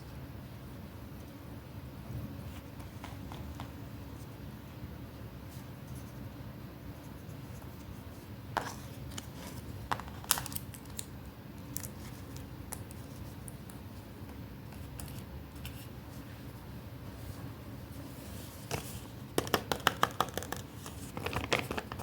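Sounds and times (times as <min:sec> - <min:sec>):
steady low hum: 0:00.0 - 0:19.8
paper handling: 0:19.8 - 0:22.0.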